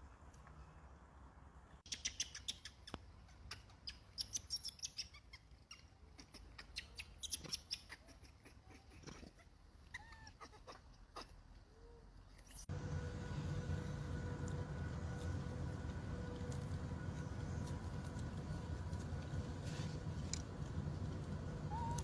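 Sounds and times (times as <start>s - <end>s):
monkey squeaking: 1.9s - 11.4s.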